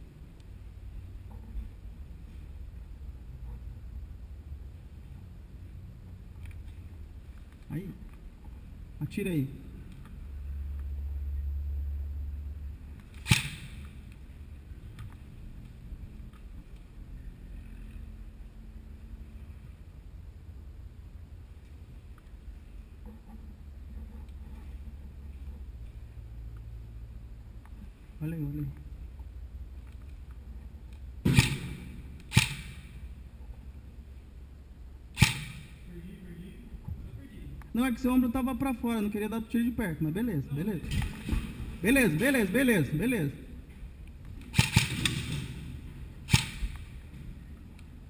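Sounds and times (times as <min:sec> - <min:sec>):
airsoft gun shot: 0:13.2 - 0:14.0, 0:31.2 - 0:32.9, 0:35.2 - 0:35.8, 0:44.5 - 0:45.7, 0:46.3 - 0:46.9.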